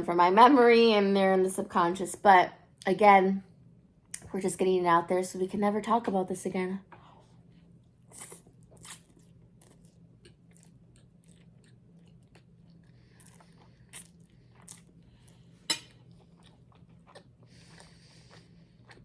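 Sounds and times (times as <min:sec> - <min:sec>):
person chewing and crunching food: 0:07.2 - 0:19.0.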